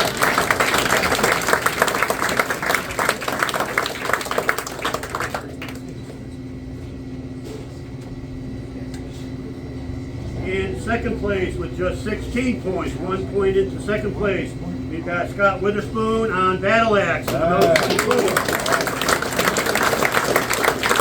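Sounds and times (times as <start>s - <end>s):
audience applauding: 0.0s - 6.2s, 17.3s - 21.0s
steady low hum: 0.0s - 21.0s.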